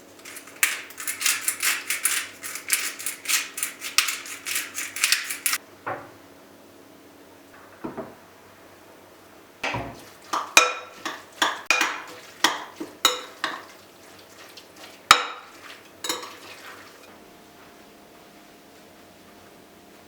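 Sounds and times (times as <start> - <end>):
hard objects clinking together: 0.0 - 5.6.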